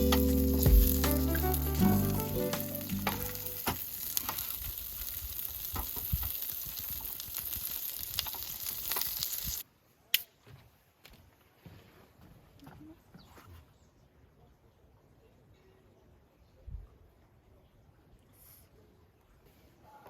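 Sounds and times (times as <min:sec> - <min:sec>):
food sizzling in a pan: 0:00.0 - 0:09.6.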